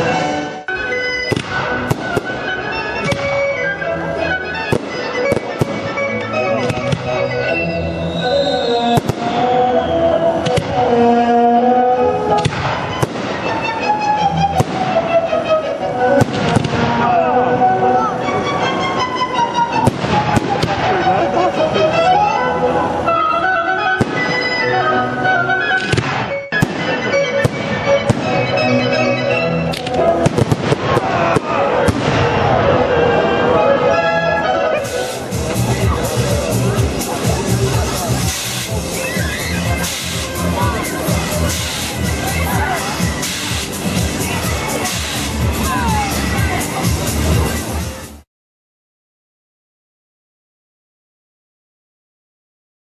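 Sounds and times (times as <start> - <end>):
music with long held notes: 0.0 - 48.2
fireworks bursting bangs: 1.2 - 3.5, 4.6 - 6.1, 8.6 - 9.7, 12.3 - 13.6, 14.5 - 15.0, 16.2 - 17.0, 19.8 - 21.0, 24.0 - 24.5, 25.8 - 28.6, 29.9 - 32.6, 39.7 - 40.4, 43.2 - 44.2, 44.8 - 45.4
fireworks crackling hiss: 8.7 - 9.5, 14.5 - 15.0, 30.2 - 32.2, 34.8 - 47.1.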